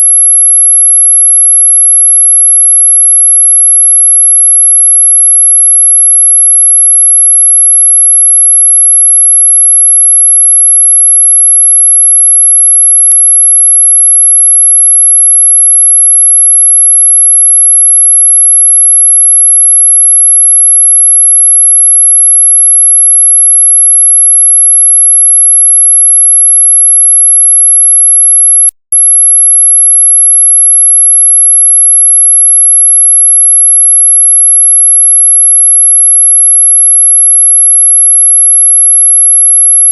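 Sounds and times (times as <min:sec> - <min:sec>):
high-pitched steady pure tone: 0:00.0 - 0:39.9.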